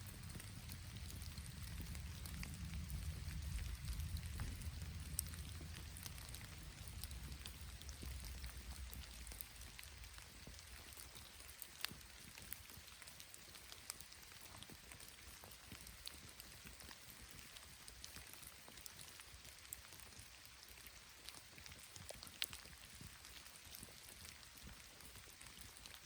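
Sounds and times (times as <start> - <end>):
low rumble: 0.0 - 10.2
light rain dripping: 0.0 - 26.0.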